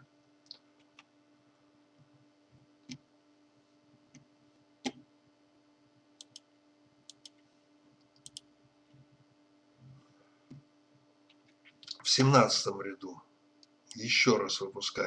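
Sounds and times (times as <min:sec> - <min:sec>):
faint steady hum: 0:00.0 - 0:15.0
computer mouse clicking: 0:06.2 - 0:06.5, 0:07.1 - 0:07.4, 0:08.1 - 0:09.0.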